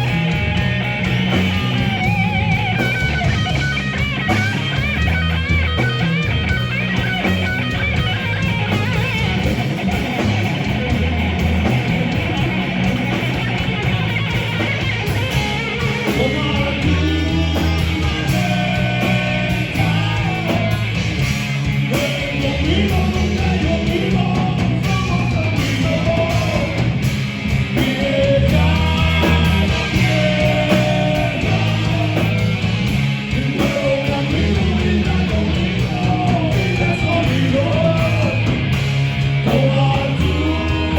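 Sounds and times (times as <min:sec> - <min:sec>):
loud rock music: 0:00.0 - 0:40.9
person singing: 0:15.9 - 0:21.0, 0:21.9 - 0:27.0, 0:27.7 - 0:32.6, 0:33.3 - 0:38.5, 0:39.4 - 0:40.9.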